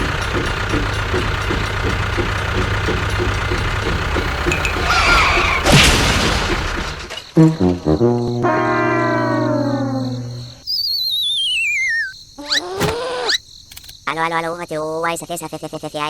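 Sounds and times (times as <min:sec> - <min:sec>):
engine chugging: 0:00.0 - 0:10.6
loud bang: 0:04.2 - 0:09.6
short squeal: 0:04.6 - 0:05.7, 0:08.6 - 0:13.4.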